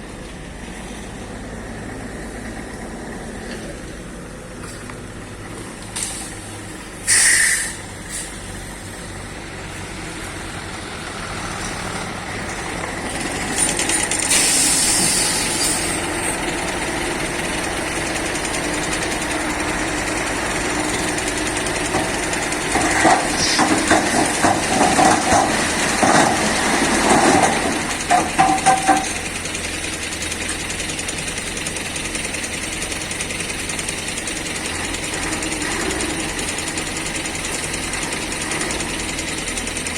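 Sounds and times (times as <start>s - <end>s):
diesel engines running: 0.0s - 39.9s
short hisses: 7.0s - 8.5s, 14.2s - 16.0s
clanks and knocks: 11.6s - 30.6s.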